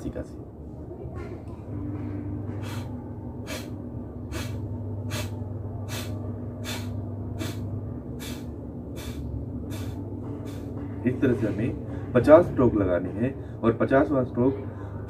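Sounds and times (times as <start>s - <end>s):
forceful nasal exhalations: 2.6s - 2.9s, 3.5s - 10.7s.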